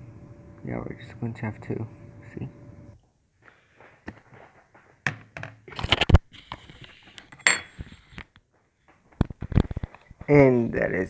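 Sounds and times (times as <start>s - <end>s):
small metal objects handled: 6.8s - 7.9s
ringing metallic clink: 7.4s - 7.7s.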